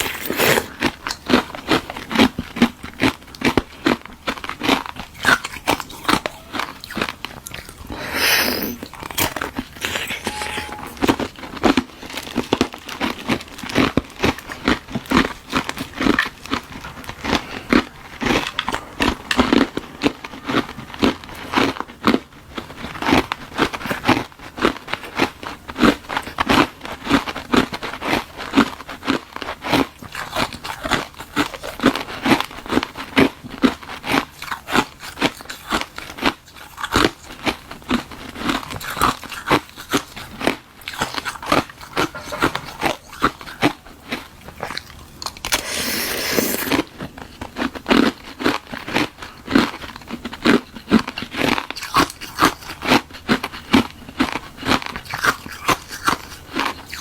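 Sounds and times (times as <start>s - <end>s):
short hissing noise: 7.9s - 8.8s.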